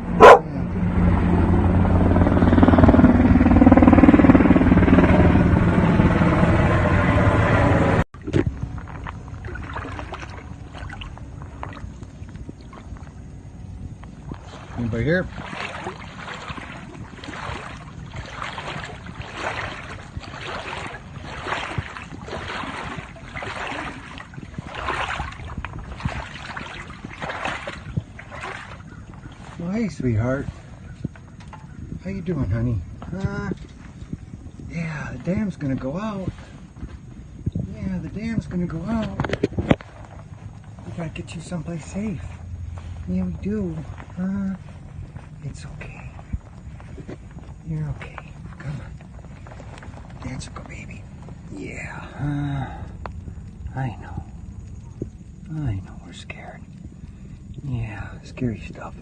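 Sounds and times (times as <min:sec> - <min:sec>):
engine running: 0:00.0 - 0:12.1, 0:37.8 - 0:55.8
water sloshing: 0:08.2 - 0:31.9, 0:32.8 - 0:57.6.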